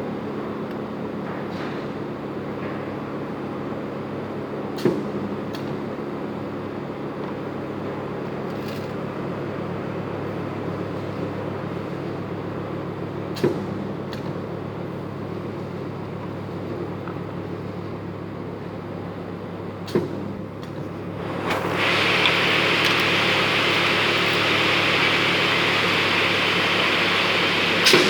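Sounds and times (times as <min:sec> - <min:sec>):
welding machine humming: 0:20.9 - 0:28.0.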